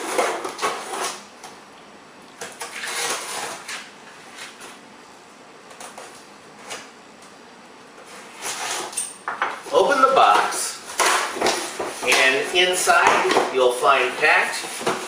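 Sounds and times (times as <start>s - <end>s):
packing tape scraping and tearing: 0.0s - 1.2s, 2.4s - 4.8s, 8.0s - 9.1s.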